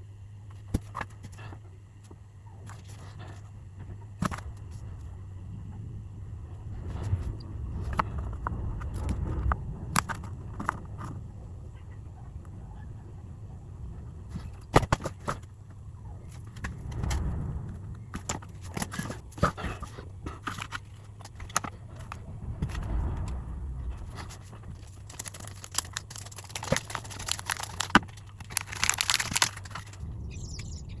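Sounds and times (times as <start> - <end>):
steady low hum: 0.0 - 31.0
rustling: 16.2 - 31.0
small objects clicking and scraping: 18.2 - 30.8.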